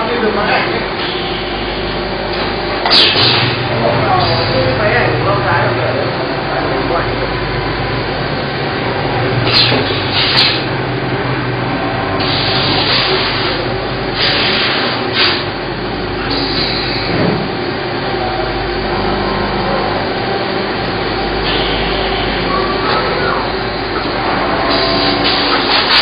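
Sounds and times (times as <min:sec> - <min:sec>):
workshop machinery humming: 0:00.0 - 0:26.0.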